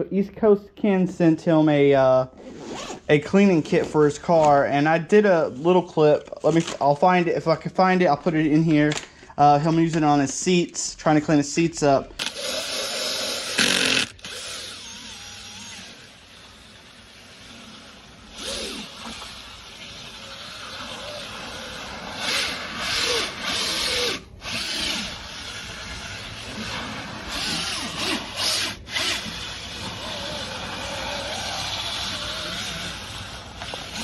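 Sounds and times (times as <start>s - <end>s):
power drill scrubbing upholstery: 12.2s - 34.0s.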